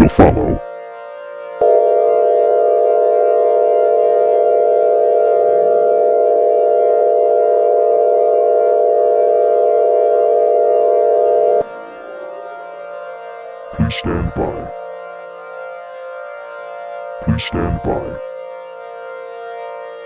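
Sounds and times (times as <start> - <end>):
electronic alert tone drone: 0.0 - 0.6, 1.6 - 11.7, 13.8 - 14.8, 17.2 - 18.2.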